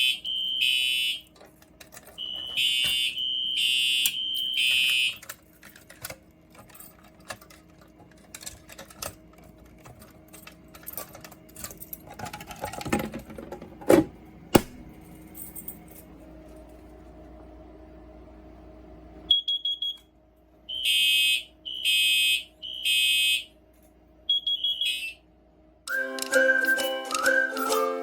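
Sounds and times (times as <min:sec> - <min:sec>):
fire alarm horn: 0:00.0 - 0:01.3, 0:02.1 - 0:05.2, 0:20.7 - 0:23.6, 0:24.3 - 0:25.2.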